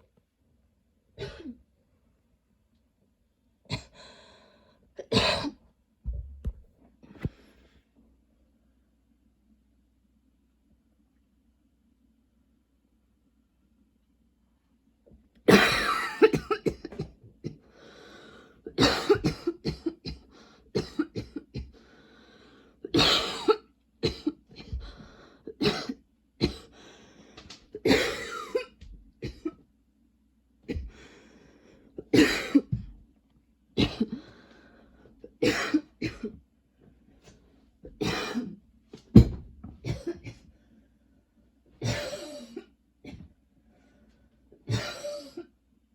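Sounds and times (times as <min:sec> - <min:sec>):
woman coughing: 0:01.2 - 0:01.6, 0:05.0 - 0:05.6, 0:15.5 - 0:17.1, 0:18.7 - 0:20.2, 0:20.8 - 0:21.7, 0:22.9 - 0:24.8, 0:25.6 - 0:26.6, 0:27.8 - 0:29.6, 0:32.0 - 0:32.8, 0:33.8 - 0:34.2, 0:35.4 - 0:36.4, 0:38.0 - 0:38.6, 0:39.8 - 0:40.4, 0:41.8 - 0:43.3, 0:44.7 - 0:45.5.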